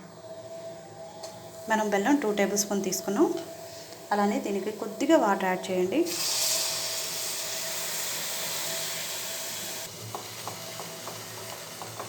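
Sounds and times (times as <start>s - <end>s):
liquid sizzling in hot pan: 3.5s - 12.0s.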